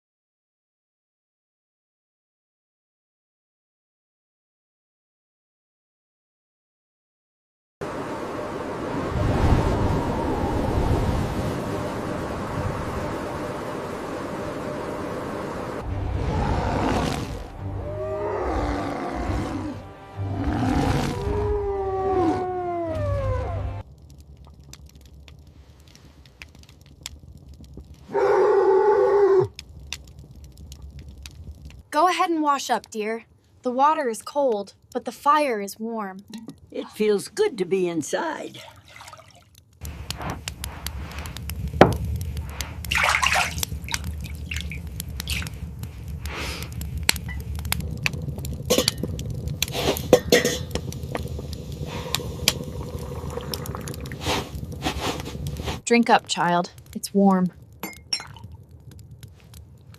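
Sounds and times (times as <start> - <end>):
dog howling: 20.6 - 23.8, 28.1 - 29.5
water splashing in a basin: 38.6 - 39.7, 42.5 - 45.7
low steady rumble: 39.9 - 59.9.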